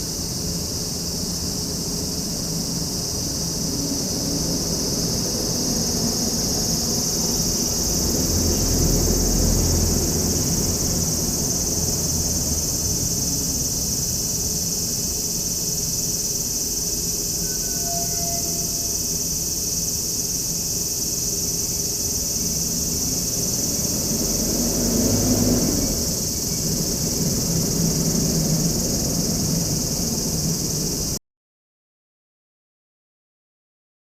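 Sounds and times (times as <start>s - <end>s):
insects chirring: 0.0s - 31.2s.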